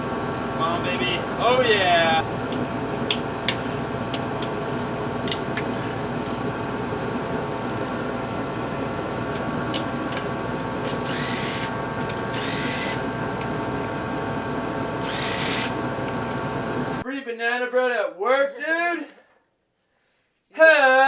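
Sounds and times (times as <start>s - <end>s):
power drill humming: 0.0s - 17.0s
drill spinning up: 3.0s - 17.0s.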